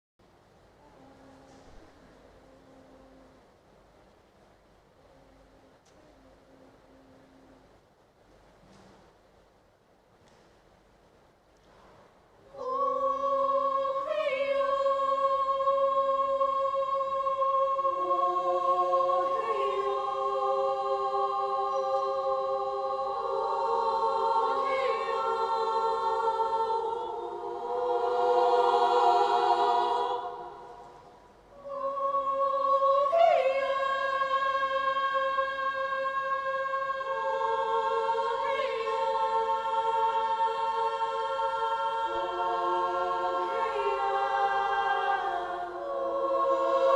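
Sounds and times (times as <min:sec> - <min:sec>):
women's choir singing: 0:12.4 - 0:46.9.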